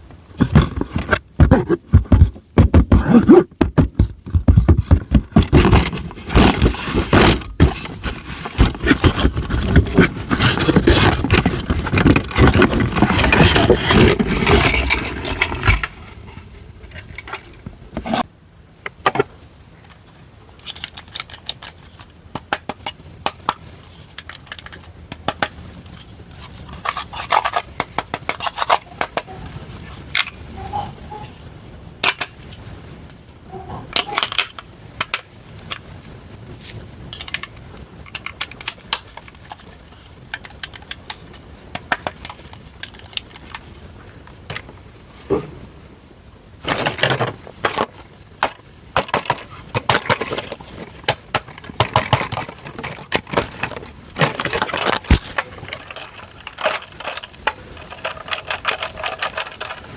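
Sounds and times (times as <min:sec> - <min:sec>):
plastic gears clicking and rattling: 0:04.5 - 0:16.3, 0:46.6 - 0:59.9.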